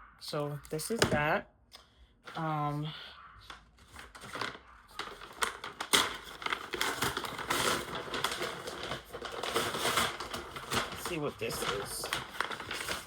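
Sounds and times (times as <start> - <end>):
packaging crinkling: 3.5 - 13.0.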